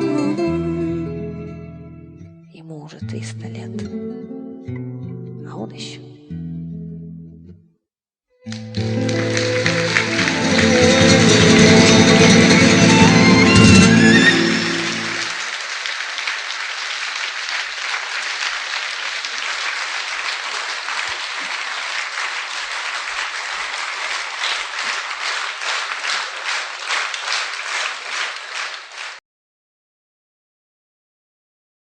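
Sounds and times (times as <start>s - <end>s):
audience applauding: 8.5s - 29.2s.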